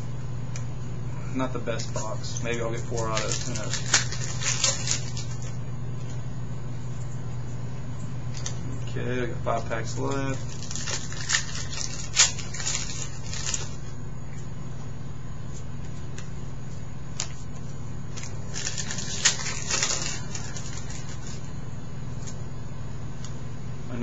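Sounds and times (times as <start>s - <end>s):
steady low hum: 0.0s - 24.0s
foil wrapper crinkling: 1.7s - 5.6s, 9.6s - 14.0s, 18.1s - 21.5s.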